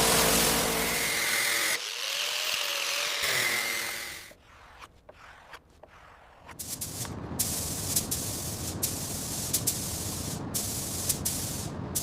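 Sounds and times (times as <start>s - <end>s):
power tool whining: 0.0s - 4.3s.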